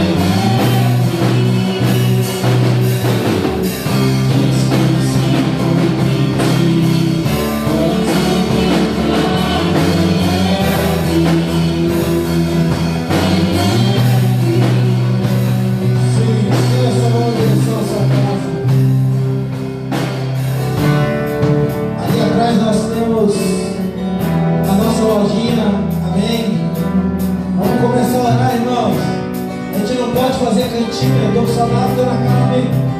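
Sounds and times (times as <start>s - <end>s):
person singing: 0.0s - 18.9s
sustained chords: 0.0s - 30.0s
guitar: 0.0s - 32.9s.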